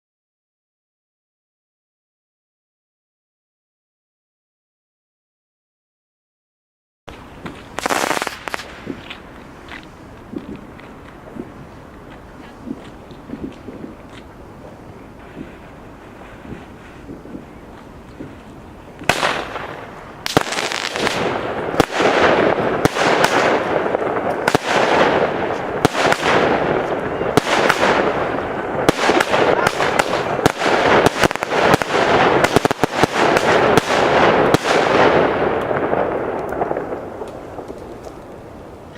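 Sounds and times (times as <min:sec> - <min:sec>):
firework shots: 0:07.1 - 0:14.2, 0:15.2 - 0:38.5
fireworks crackling sizzle: 0:07.1 - 0:38.9.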